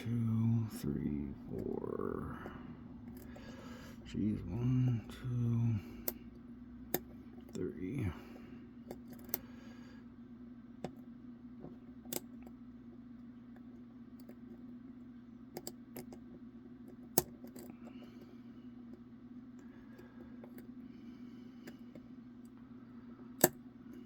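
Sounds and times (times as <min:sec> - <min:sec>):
low hum: 0:00.0 - 0:13.6
lock pick metallic clicks: 0:23.4 - 0:23.6.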